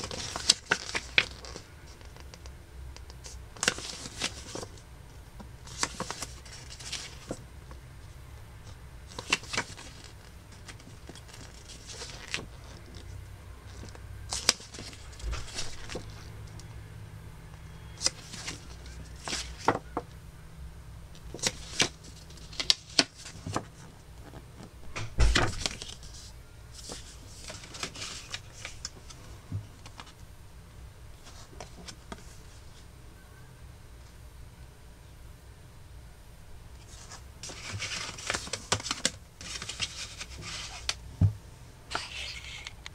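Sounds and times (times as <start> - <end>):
hands handling cd packaging: 0.0 - 4.8, 5.4 - 7.8, 8.7 - 13.1, 13.7 - 16.7, 17.8 - 20.0, 21.2 - 24.4, 25.4 - 30.2, 36.8 - 41.0
low steady hum: 0.0 - 42.9.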